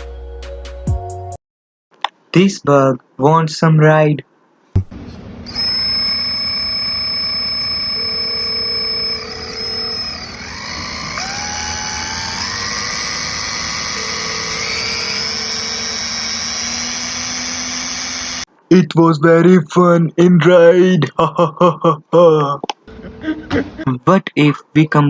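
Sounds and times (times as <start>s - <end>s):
small electric motor whining: 5.4s - 18.5s.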